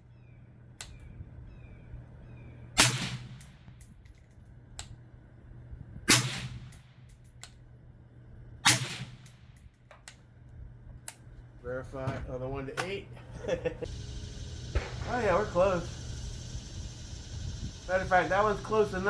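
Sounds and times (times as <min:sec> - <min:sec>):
suppressed rifle shots: 0:02.8 - 0:03.9, 0:06.1 - 0:06.9, 0:08.6 - 0:09.7, 0:14.7 - 0:15.8.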